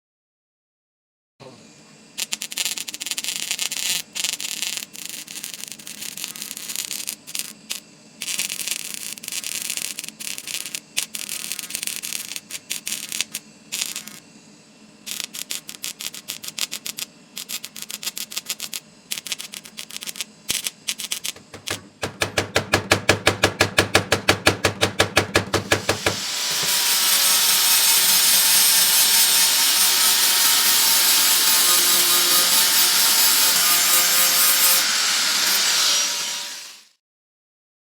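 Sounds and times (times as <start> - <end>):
welding machine crackling: 2.2 - 14.3, 15.1 - 32.8
steady rasping noise: 15.1 - 33.0.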